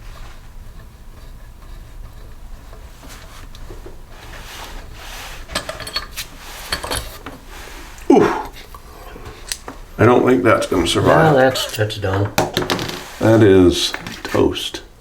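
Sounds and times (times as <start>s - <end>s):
metal tools clinking: 5.5s - 7.2s, 10.6s - 12.4s.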